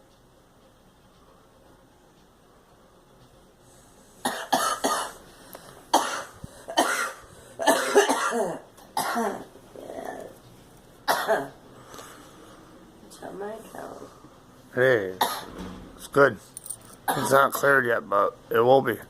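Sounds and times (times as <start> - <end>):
girl coughing: 4.2 - 5.2, 5.9 - 9.5, 11.1 - 11.6, 15.2 - 15.5, 17.1 - 17.4.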